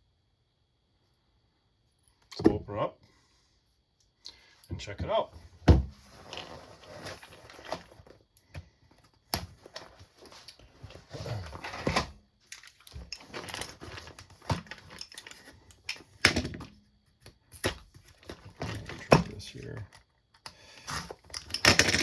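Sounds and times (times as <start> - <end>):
box and packaging handled: 6.0 - 8.2, 8.9 - 19.9.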